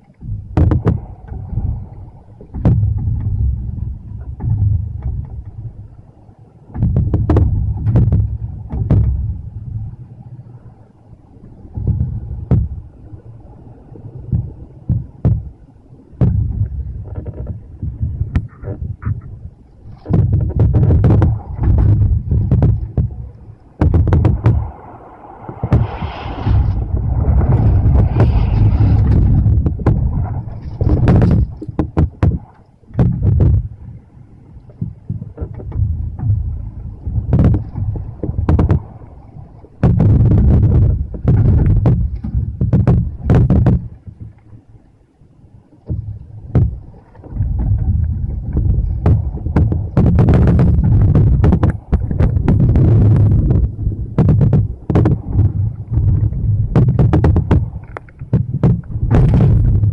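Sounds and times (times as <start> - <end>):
wind buffeting microphone: 0.0 - 59.9
sharp knocks: 0.2 - 1.5, 2.5 - 3.6, 6.7 - 9.3, 16.2 - 19.3, 20.0 - 24.7, 25.6 - 33.8, 34.7 - 39.1, 39.8 - 44.4, 45.8 - 59.9.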